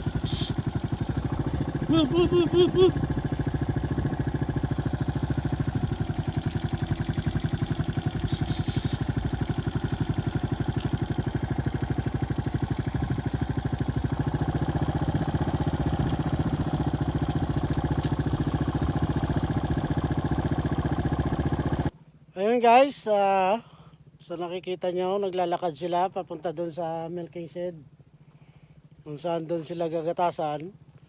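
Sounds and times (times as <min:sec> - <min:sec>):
short hiss: 0:00.0 - 0:00.8, 0:08.0 - 0:09.2
small engine running at low revs: 0:00.0 - 0:22.0.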